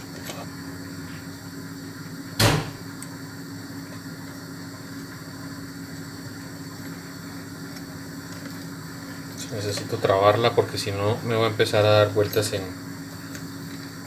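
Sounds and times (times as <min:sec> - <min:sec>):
steady low hum: 0:00.0 - 0:14.0
sharp knock: 0:02.4 - 0:02.8.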